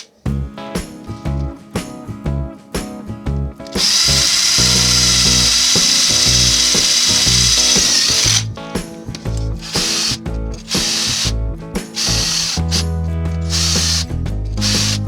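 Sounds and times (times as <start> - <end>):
background music with a beat: 0.0 - 15.0
power tool high whine: 3.8 - 8.5, 9.6 - 11.3, 12.0 - 12.8, 13.5 - 14.0, 14.6 - 15.0.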